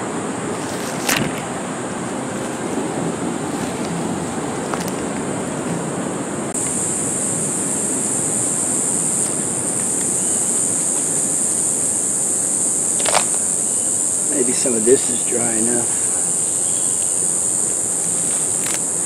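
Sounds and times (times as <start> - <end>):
surf washing on beach: 0.0 - 12.0
high-pitched insect buzz: 6.6 - 19.0.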